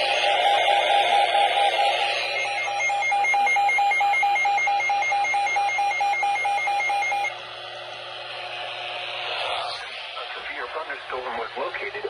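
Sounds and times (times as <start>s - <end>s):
weather radio pulsing beeps: 0.9s - 7.4s
radio static: 9.2s - 12.0s.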